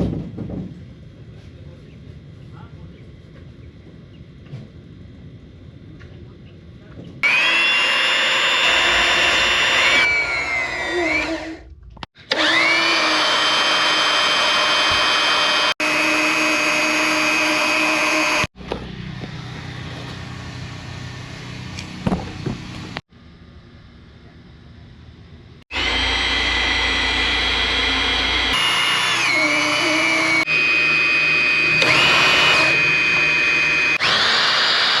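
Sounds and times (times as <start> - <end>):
power tool motor whine: 7.2 - 18.5, 25.7 - 35.0.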